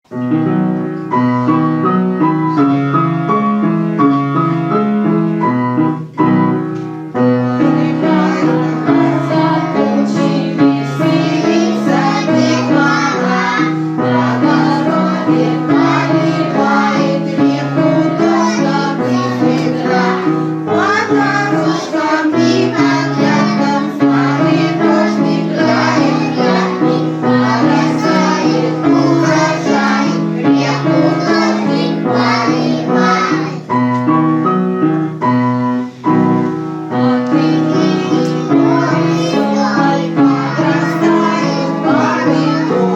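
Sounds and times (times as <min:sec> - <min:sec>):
children singing: 0:07.2 - 0:33.7, 0:36.4 - 0:42.9
bouncing keyboard accompaniment: 0:07.8 - 0:35.6.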